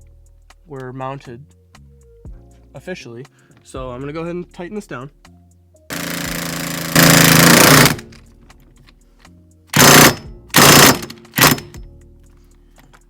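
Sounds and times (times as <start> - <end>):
impact wrench hammering: 5.9 - 8.2, 9.8 - 11.9.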